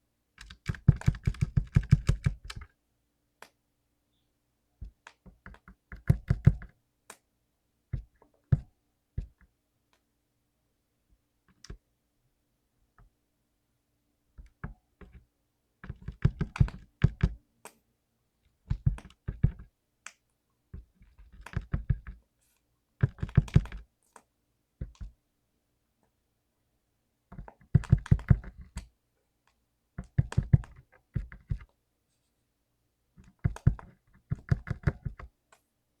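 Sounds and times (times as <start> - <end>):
clicky mechanical keyboard typing: 0.4 - 2.7, 15.8 - 17.4, 18.7 - 19.7, 21.1 - 22.2, 23.0 - 23.8, 27.4 - 28.9, 30.0 - 31.7, 33.2 - 35.3.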